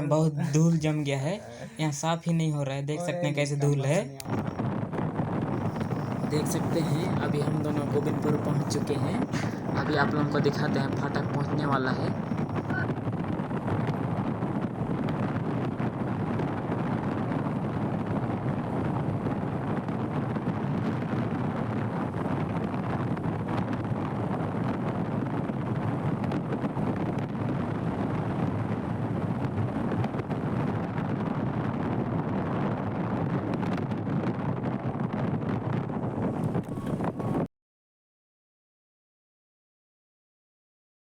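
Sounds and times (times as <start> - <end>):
wind rushing over microphone: 0.0 - 37.5
road noise: 4.2 - 32.6.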